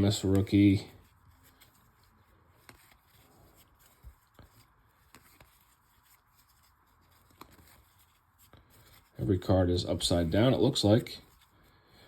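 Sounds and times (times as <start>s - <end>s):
trading cards flipping: 0.0s - 9.3s.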